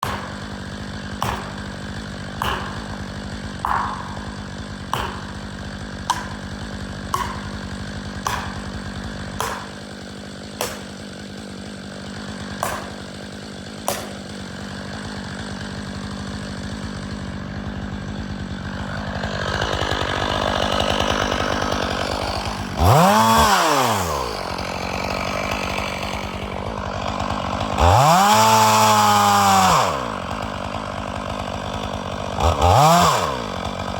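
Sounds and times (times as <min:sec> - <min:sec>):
sharp knocks: 0:00.0 - 0:11.1, 0:12.6 - 0:14.4
chainsaw idling and revving: 0:00.0 - 0:33.9.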